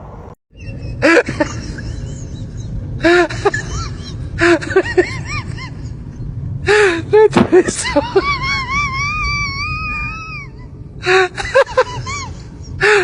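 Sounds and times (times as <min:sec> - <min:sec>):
animal high rising-and-falling cries: 0:08.3 - 0:10.7.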